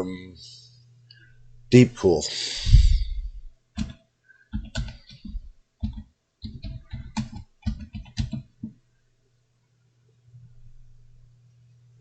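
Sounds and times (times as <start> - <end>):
computer keyboard keystrokes: 3.8 - 8.8.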